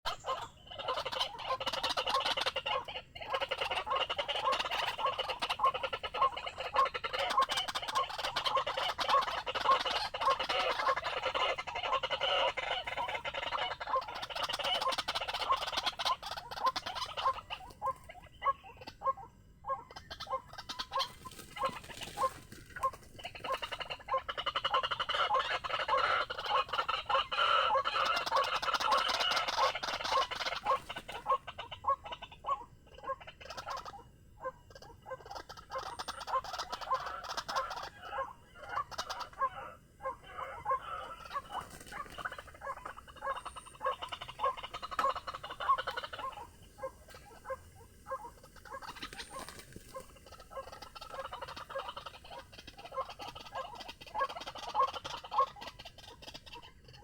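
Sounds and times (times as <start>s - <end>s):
waterhen calling harsh notes: 34.8s - 55.8s.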